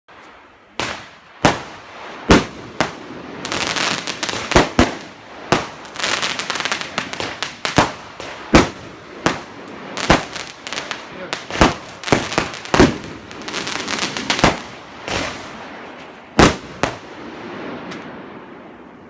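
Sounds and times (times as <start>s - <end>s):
fireworks crackling: 0.1s - 18.6s
fireworks bangs: 0.7s - 19.0s.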